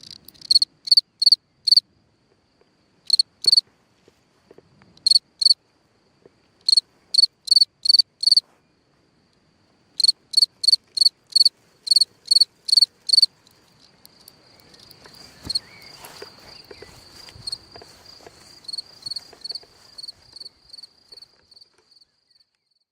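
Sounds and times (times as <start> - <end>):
cricket trill: 0.0 - 22.8
cricket chirping: 0.0 - 22.9
faint crackling rustling: 10.5 - 22.1.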